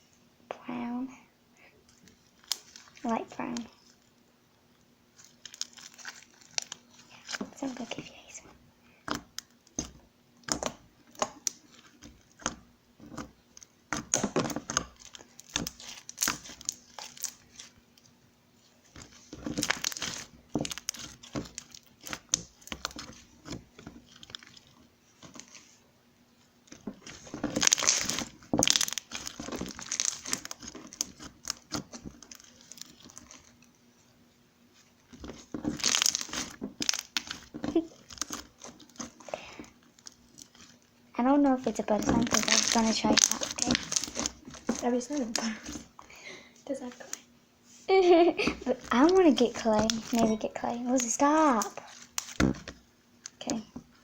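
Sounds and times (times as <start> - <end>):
slime squished crackling and popping: 2.1 - 4.0, 5.1 - 8.4, 9.0 - 18.0, 18.8 - 25.8, 26.5 - 33.8, 34.7 - 46.0, 48.6 - 54.0.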